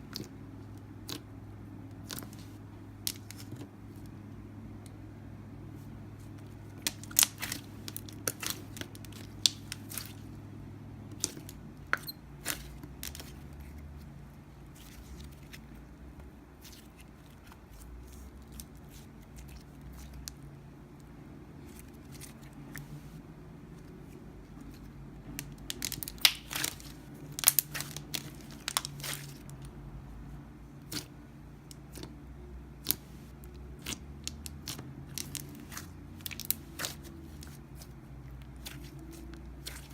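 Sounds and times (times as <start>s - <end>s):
low steady hum: 0.0s - 39.9s
slime crackling and popping: 6.8s - 10.2s, 25.4s - 29.6s, 33.8s - 39.9s.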